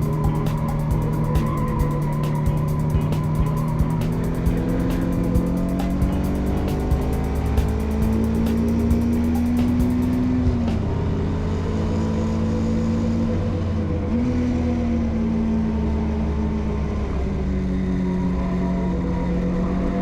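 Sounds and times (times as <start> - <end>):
car engine running: 0.0 - 19.6.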